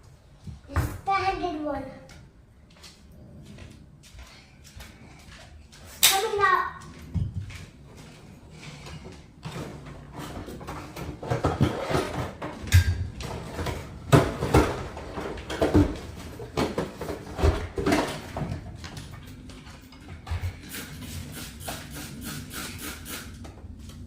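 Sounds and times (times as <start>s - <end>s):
objects knocking and clattering: 6.8s - 20.8s.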